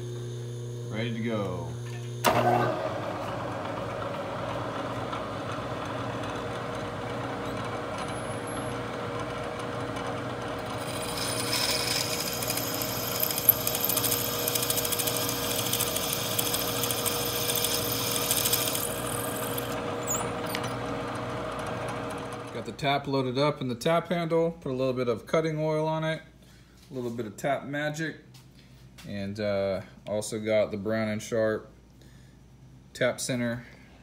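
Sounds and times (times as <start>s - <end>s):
milling machine motor hum: 0.0s - 22.6s
drill bit cutting metal: 7.4s - 8.9s, 10.6s - 20.8s.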